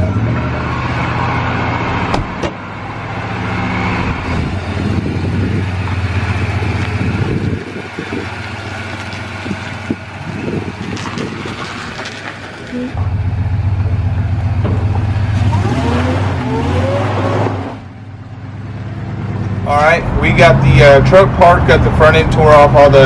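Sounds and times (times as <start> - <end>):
truck engine droning: 0.0 - 23.0.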